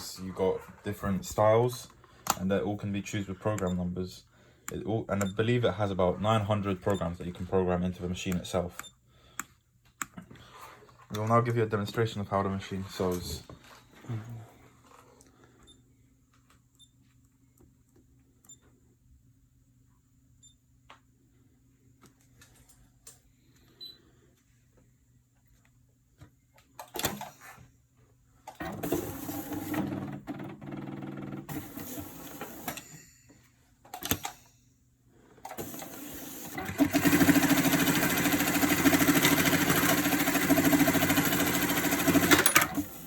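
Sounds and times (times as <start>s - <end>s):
machine clicks and clunks: 26.8s - 27.4s, 33.8s - 34.5s
rapid high-speed machine stitching: 35.6s - 43.0s.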